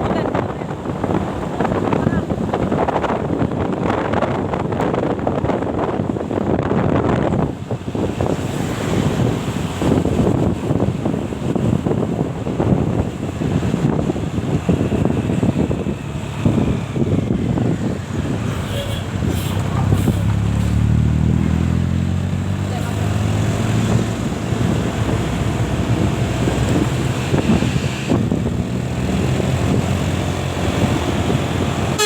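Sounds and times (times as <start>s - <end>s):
traffic noise: 0.0s - 32.0s
vehicle engine humming: 0.0s - 32.0s
wind buffeting microphone: 0.0s - 32.0s.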